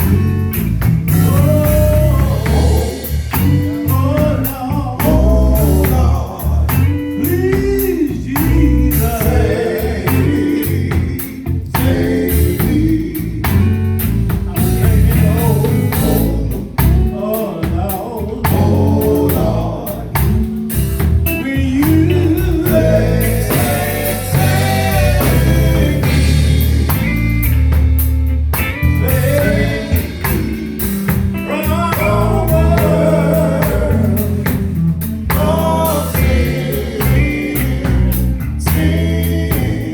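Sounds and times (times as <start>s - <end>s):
bass line: 0.0s - 39.9s
drum kit beat: 0.0s - 39.9s
electric guitar: 0.0s - 39.9s
person singing: 21.4s - 27.0s, 28.8s - 39.9s.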